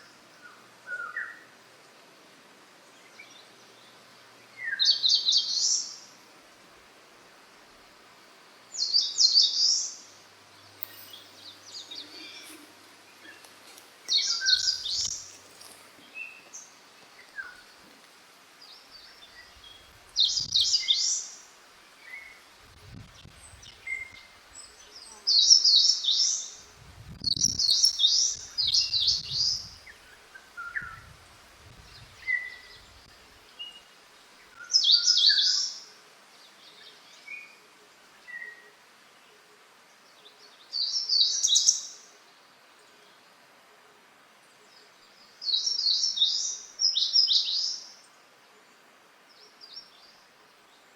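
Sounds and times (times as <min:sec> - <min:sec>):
soft bird chirps: 0:08.8 - 0:17.8.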